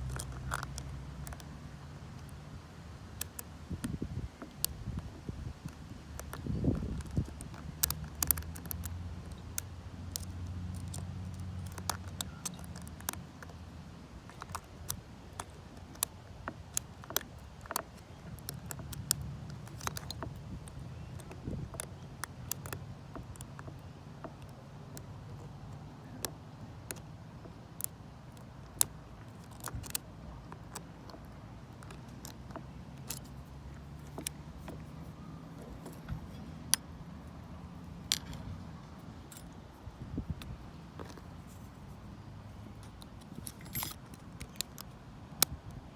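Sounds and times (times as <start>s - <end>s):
lock pick clicking in a lock: 5.6s - 25.5s, 26.2s - 36.9s, 38.0s - 39.6s, 42.8s - 45.6s
muffled wind rumble: 33.9s - 42.8s.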